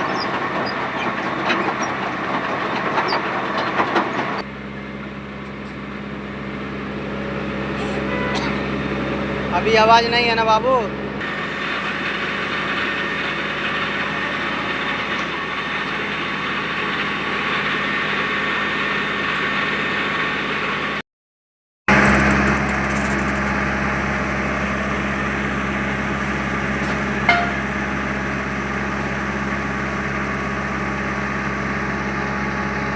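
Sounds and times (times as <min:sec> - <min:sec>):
paver engine running: 0:00.0 - 0:21.0, 0:21.9 - 0:32.9.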